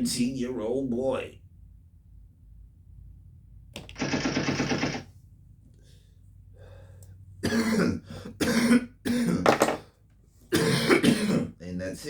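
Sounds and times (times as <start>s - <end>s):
man coughing hard: 7.4s - 9.6s, 10.5s - 11.6s.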